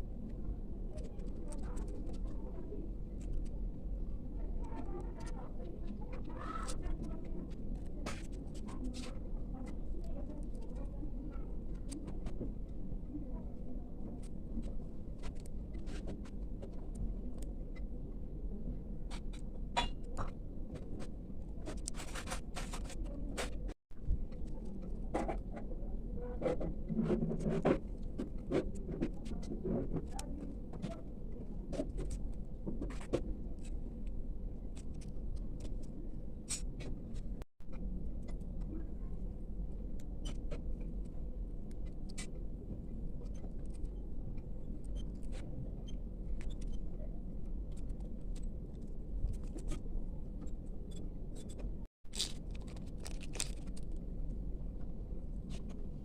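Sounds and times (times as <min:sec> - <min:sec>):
hands handling small packaging: 0:52.1 - 0:54.0.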